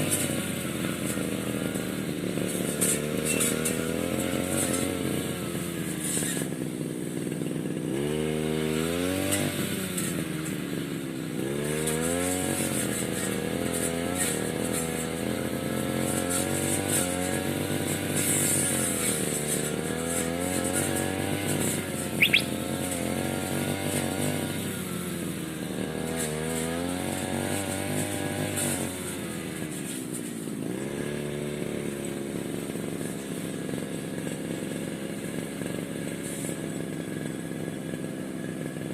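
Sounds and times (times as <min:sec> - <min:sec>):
grass cutter engine revving: 0:00.0 - 0:38.9
sharp high-pitched sound: 0:22.2 - 0:22.6.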